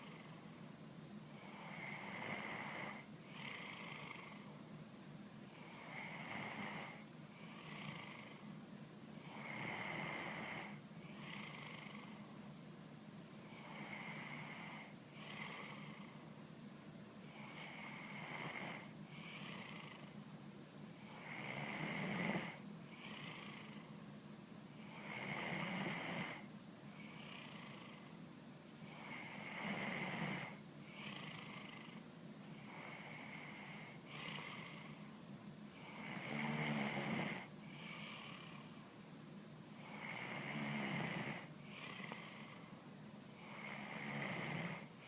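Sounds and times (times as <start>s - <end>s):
person snoring: 1.4s - 4.4s, 9.2s - 12.2s, 21.0s - 23.8s, 24.8s - 26.4s, 28.8s - 35.0s, 35.8s - 38.8s, 39.8s - 42.6s, 43.4s - 44.9s.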